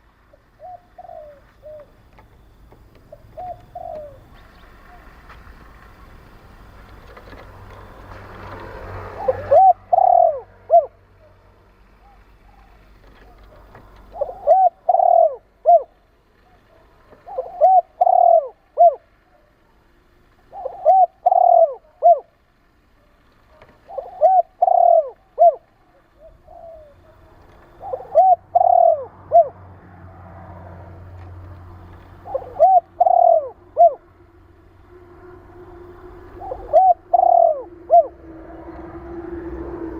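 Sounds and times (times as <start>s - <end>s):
dove cooing: 0.0s - 19.8s, 20.4s - 39.9s.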